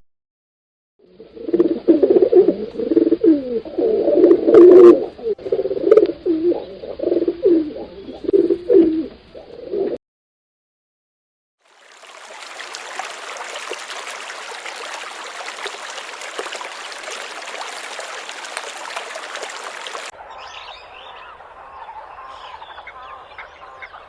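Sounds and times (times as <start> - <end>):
pigeons cooing: 1.1 - 10.0, 12.5 - 20.1.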